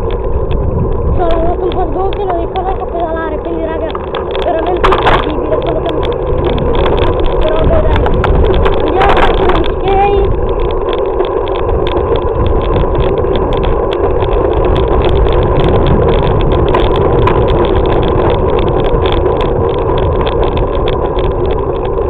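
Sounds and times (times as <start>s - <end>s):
bicycle clicks and rattles: 0.0s - 22.0s
wind and road rumble: 0.0s - 22.0s.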